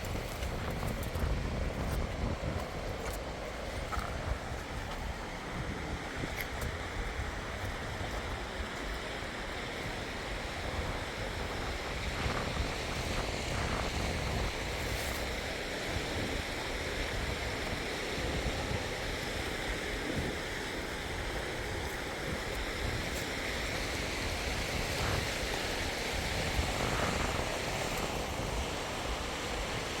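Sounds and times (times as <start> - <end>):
gusty low rumble on microphone: 0.0 - 8.8
steady rushing outdoor noise: 0.0 - 30.0.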